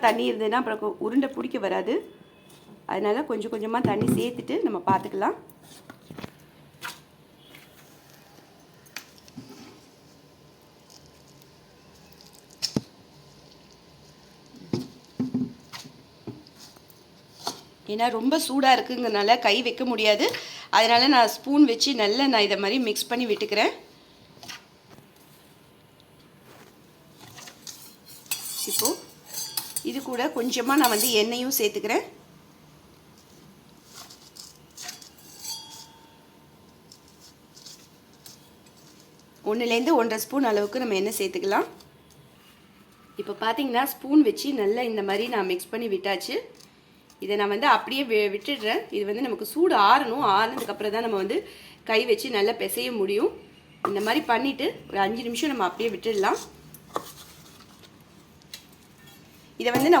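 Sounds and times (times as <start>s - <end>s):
soft squishing of dough: 5.5s - 17.9s, 22.7s - 30.6s, 32.8s - 35.5s, 36.4s - 43.4s, 53.9s - 60.0s
spoon clinking against vessels: 28.1s - 31.3s, 34.8s - 36.3s.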